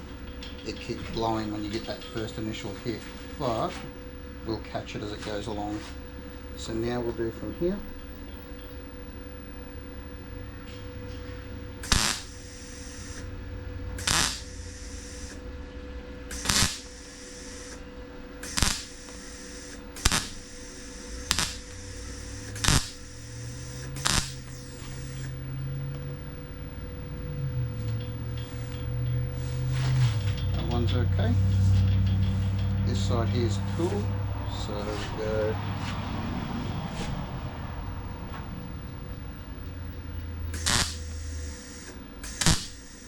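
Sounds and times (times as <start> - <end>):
welder hum: 0.0 - 43.0
welding bursts: 11.7 - 15.5, 16.1 - 35.5, 40.3 - 43.0.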